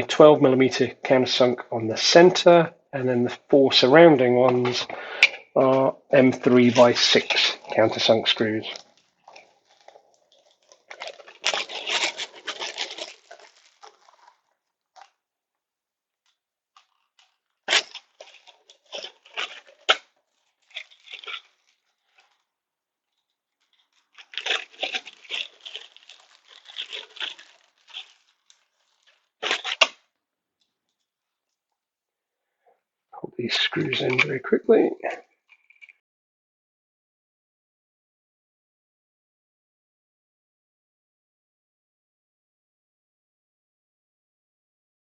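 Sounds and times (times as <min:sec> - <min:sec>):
small screws clicking: 0:23.7 - 0:30.0.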